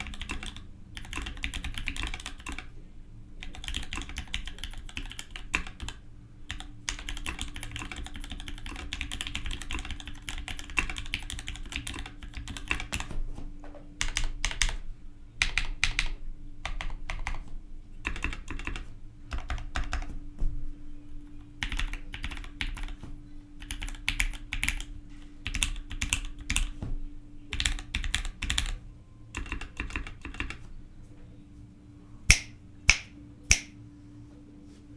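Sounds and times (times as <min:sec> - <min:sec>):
loud keyboard clicks: 0:00.0 - 0:02.7, 0:03.4 - 0:13.2, 0:14.0 - 0:14.8, 0:15.4 - 0:17.5, 0:18.1 - 0:20.2, 0:21.6 - 0:23.0, 0:23.6 - 0:24.9, 0:25.5 - 0:26.8, 0:27.5 - 0:28.8, 0:29.4 - 0:30.6, 0:32.3 - 0:33.7
mechanical keyboard typing: 0:00.0 - 0:02.7, 0:03.4 - 0:13.2, 0:14.0 - 0:14.8, 0:15.4 - 0:20.2, 0:21.6 - 0:23.0, 0:23.6 - 0:26.8, 0:27.5 - 0:30.6.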